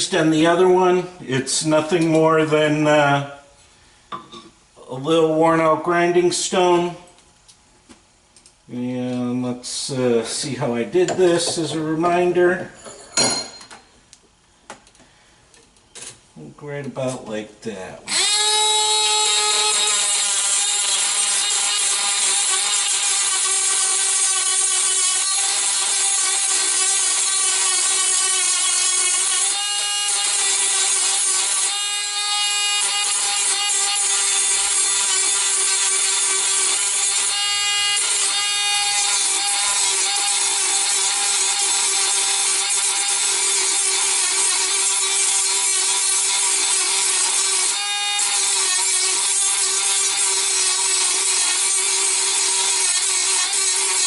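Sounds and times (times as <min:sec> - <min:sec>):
rotary tool grinding: 0:18.1 - 0:54.0.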